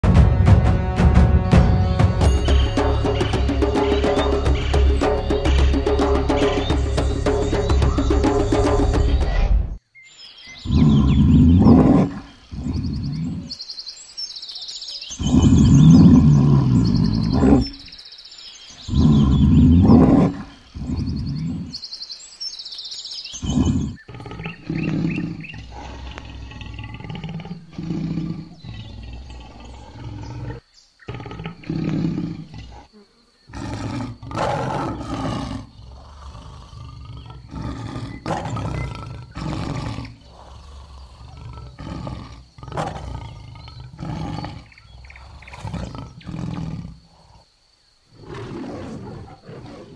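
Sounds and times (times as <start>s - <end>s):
lion roaring: 10.6s - 13.6s, 15.1s - 17.9s, 18.8s - 21.8s, 23.4s - 47.5s, 48.2s - 49.9s.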